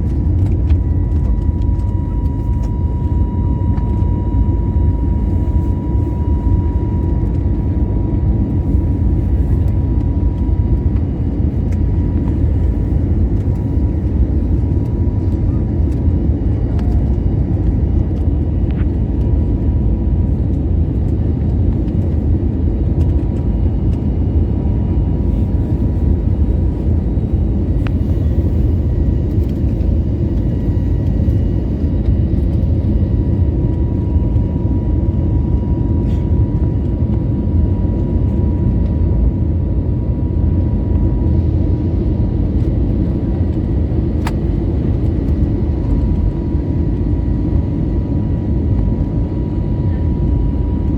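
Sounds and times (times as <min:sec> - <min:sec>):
engine and airflow rumble: 0:00.0 - 0:50.9
thin steady whine: 0:00.3 - 0:19.6.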